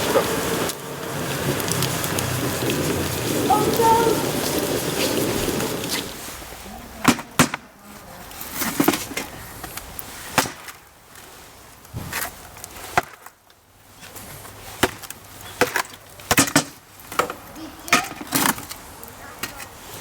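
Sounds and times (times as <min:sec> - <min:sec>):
bamboo cracking pops: 0:10.4 - 0:10.8.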